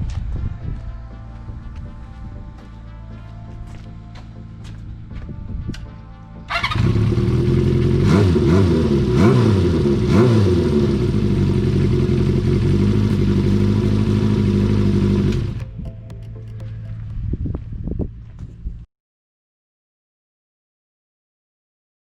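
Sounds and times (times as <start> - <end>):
motorcycle engine revving and idling: 6.5 - 15.7.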